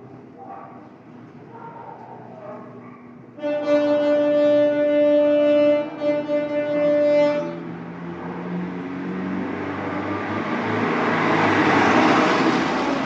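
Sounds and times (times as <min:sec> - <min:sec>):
garbage truck horn blast: 0:03.3 - 0:08.0.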